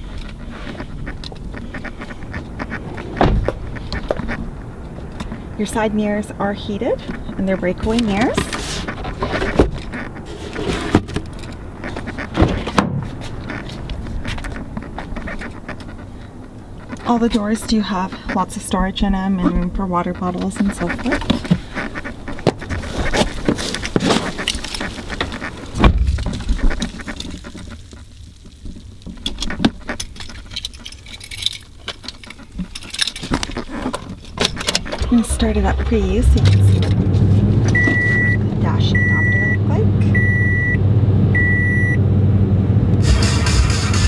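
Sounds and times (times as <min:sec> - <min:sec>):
truck door knocks and clunks: 0:02.9 - 0:04.3, 0:12.3 - 0:13.2, 0:25.2 - 0:26.7
light clicks and rattles: 0:28.4 - 0:37.8
keys jangling: 0:30.2 - 0:33.6
low rumble: 0:35.0 - 0:43.3.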